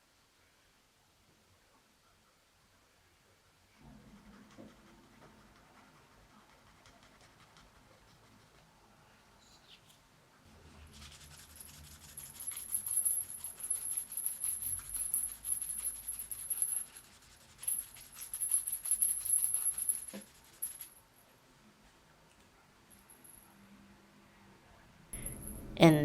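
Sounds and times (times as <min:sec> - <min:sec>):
tiny bells jingling on key ring: 0:12.1 - 0:17.0, 0:17.6 - 0:20.9, 0:25.2 - 0:25.8.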